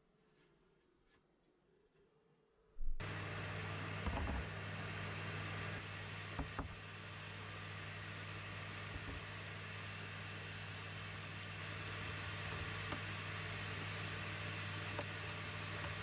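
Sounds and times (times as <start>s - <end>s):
electric machine humming: 3.0s - 16.0s.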